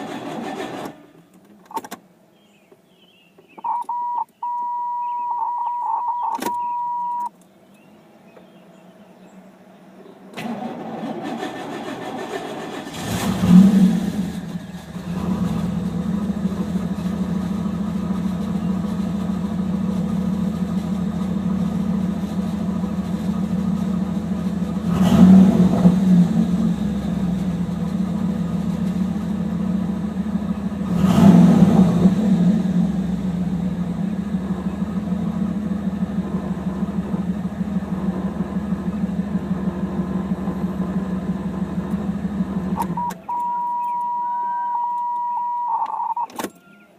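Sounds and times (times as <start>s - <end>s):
car engine cranking on starter: 0.0s - 2.0s, 10.3s - 44.2s, 44.9s - 46.7s
car engine idling with revs: 11.1s - 43.2s.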